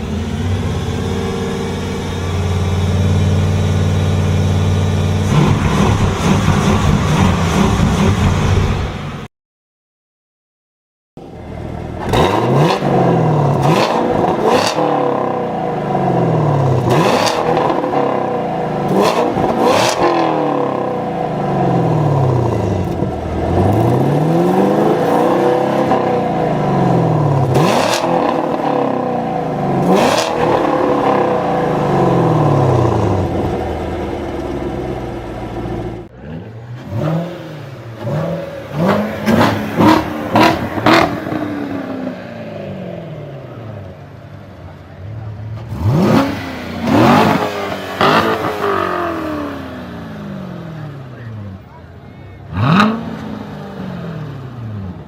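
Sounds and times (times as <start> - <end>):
car engine revving: 0.0 - 9.3, 11.2 - 55.0.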